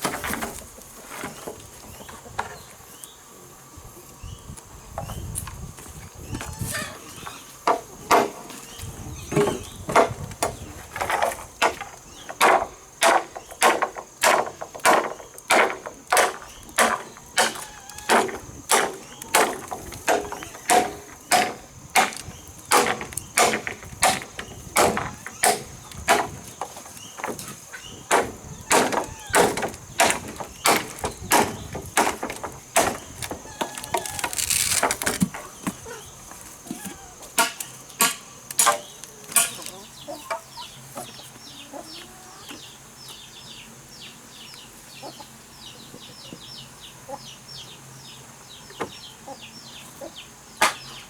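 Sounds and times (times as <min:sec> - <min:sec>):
wood chopping: 0:07.7 - 0:08.5, 0:09.3 - 0:35.8.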